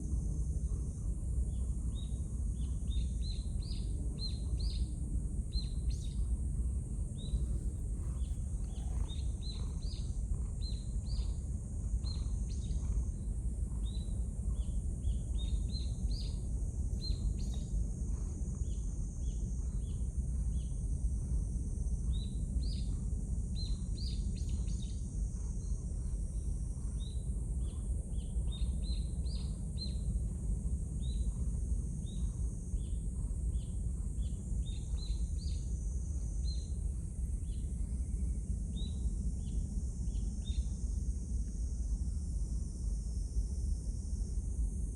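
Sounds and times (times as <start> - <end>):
small birds chirping: 7.1 - 16.4
low rumble: 7.2 - 11.3.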